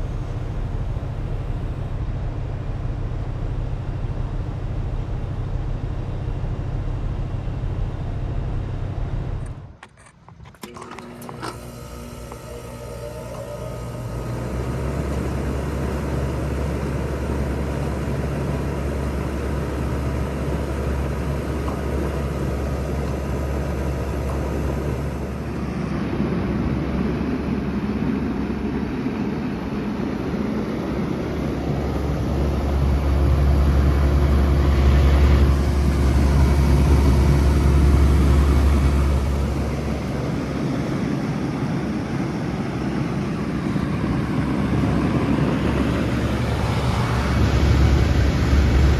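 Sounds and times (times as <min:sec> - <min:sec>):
heat pump humming: 0:00.0 - 0:09.8, 0:10.4 - 0:48.9
rushing air: 0:20.3 - 0:48.9.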